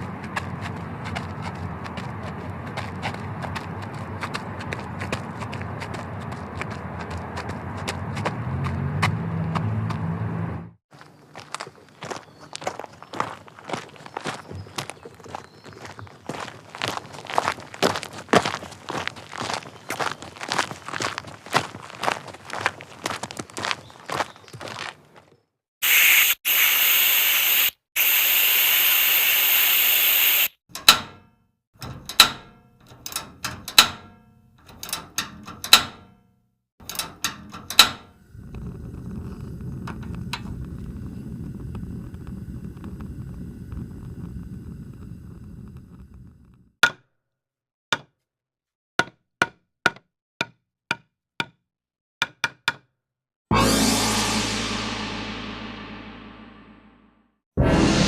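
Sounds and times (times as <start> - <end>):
loud hissing: 25.8 - 30.6
low rumbling noise: 53.5 - 58.0.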